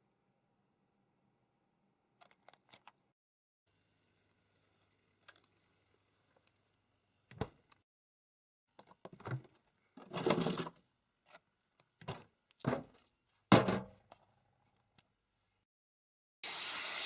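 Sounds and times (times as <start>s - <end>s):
objects knocking and thumping: 12.0s - 14.0s.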